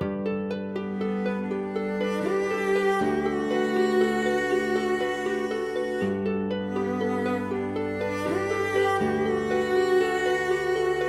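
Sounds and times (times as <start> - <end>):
slow cello piece: 0.0 - 11.0.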